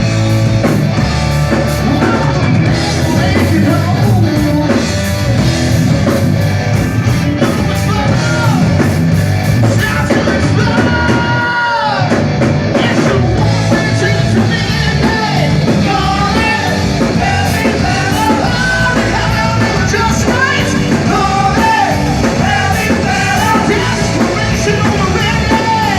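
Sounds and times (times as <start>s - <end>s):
live hard rock band: 0.0s - 25.9s
person singing: 1.7s - 5.0s, 9.6s - 25.9s.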